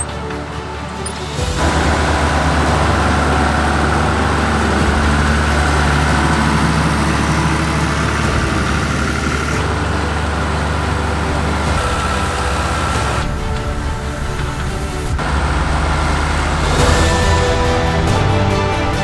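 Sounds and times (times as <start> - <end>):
tractor diesel engine running: 0.0 - 19.0.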